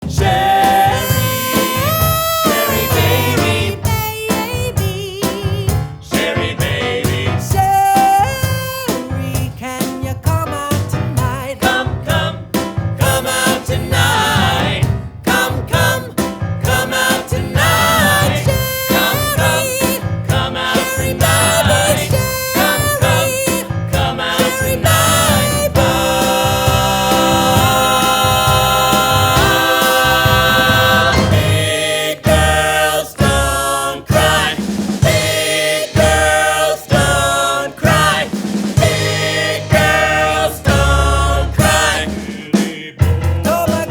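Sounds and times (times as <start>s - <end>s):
band with steady beat: 0.0s - 43.9s
male vocal group singing: 0.0s - 43.9s.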